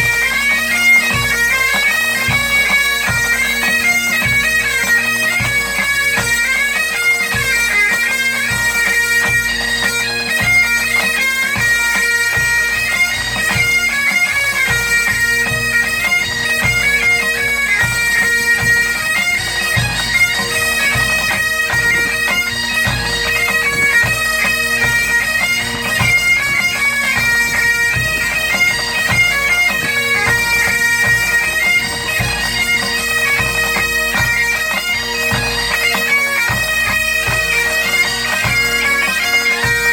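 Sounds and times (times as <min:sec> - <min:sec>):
bagpipes playing: 0:00.0 - 0:39.9
drums beating: 0:17.8 - 0:33.9.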